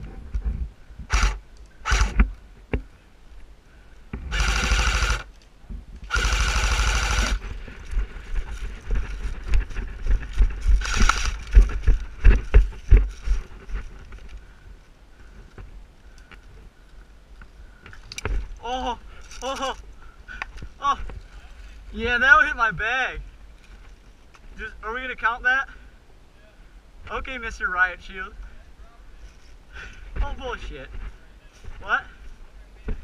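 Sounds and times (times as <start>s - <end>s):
automatic airsoft gunfire: 4.3s - 5.2s, 6.1s - 7.4s
knocks and rustling: 7.3s - 14.4s.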